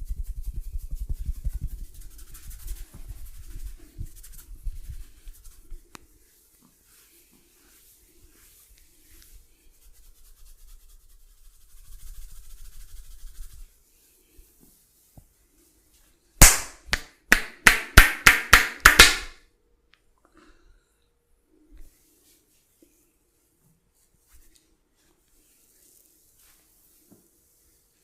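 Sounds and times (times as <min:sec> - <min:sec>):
hands rubbing over skin: 0:00.0 - 0:19.4, 0:21.8 - 0:28.0
percussive massage slaps: 0:16.4 - 0:19.4.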